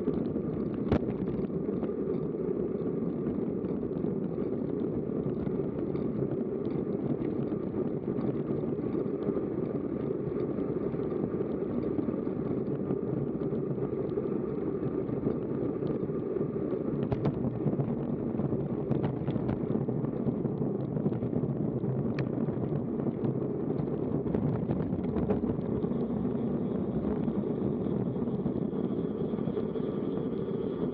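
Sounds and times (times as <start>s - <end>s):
wind rushing on microphone: 0.0s - 30.9s.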